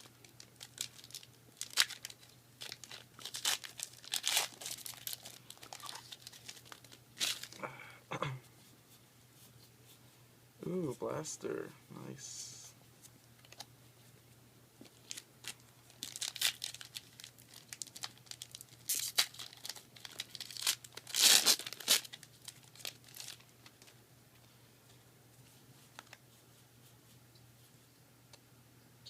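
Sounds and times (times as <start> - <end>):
foil pack tearing: 0.0 - 7.6, 15.0 - 23.9
wrapper crinkling: 0.0 - 7.6, 14.8 - 24.0.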